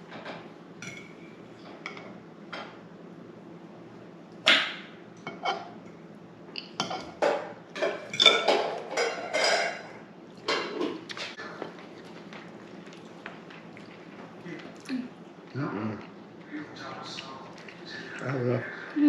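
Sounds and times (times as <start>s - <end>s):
dishes and utensils clattering: 0.1s - 2.8s, 5.3s - 5.8s, 6.8s - 11.3s.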